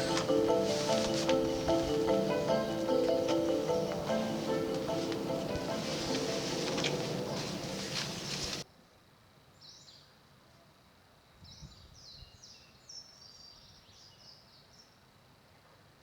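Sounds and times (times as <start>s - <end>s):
background music: 0.0s - 8.6s.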